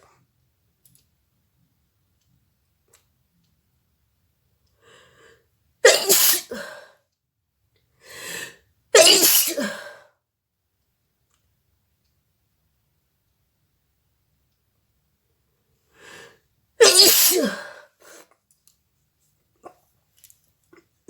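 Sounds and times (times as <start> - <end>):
woman sneezing: 5.9 - 6.7, 9.0 - 9.9, 16.8 - 17.8.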